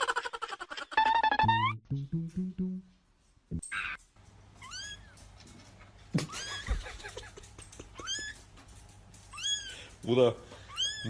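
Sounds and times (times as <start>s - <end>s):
cat meowing: 10.7s - 11.0s.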